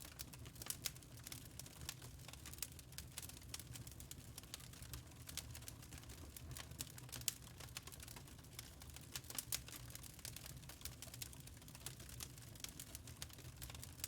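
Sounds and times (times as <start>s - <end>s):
log fire crackling: 0.0s - 14.0s.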